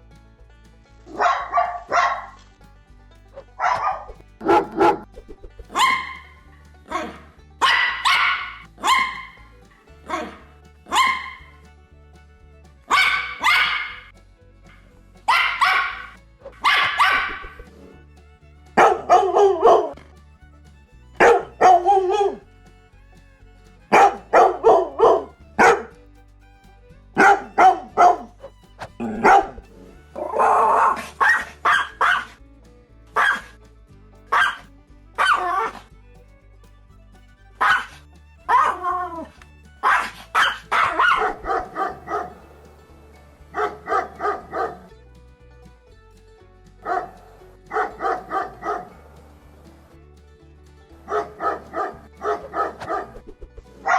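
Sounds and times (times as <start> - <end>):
background music: 0.0 - 53.9
dog barking: 1.1 - 2.4, 3.6 - 5.1, 5.7 - 6.2, 6.9 - 9.4, 10.9 - 11.4, 12.9 - 14.0, 15.3 - 17.6, 18.8 - 20.0, 21.2 - 22.4, 23.9 - 25.9, 27.2 - 28.4, 29.0 - 29.6, 30.2 - 32.3, 33.2 - 33.5, 34.3 - 34.6, 35.2 - 35.8, 37.6 - 37.9, 38.5 - 42.4, 43.5 - 44.9, 46.8 - 49.0, 51.1 - 53.2.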